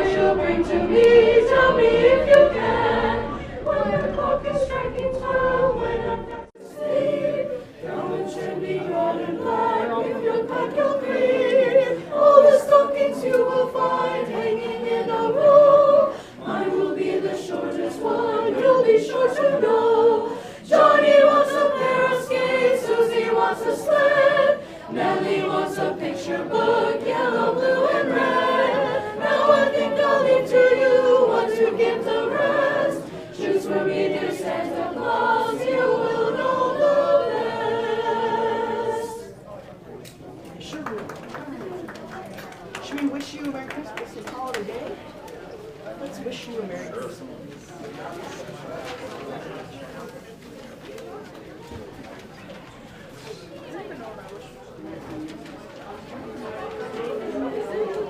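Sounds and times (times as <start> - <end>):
group singing a carol: 0.0 - 39.6, 55.0 - 58.0.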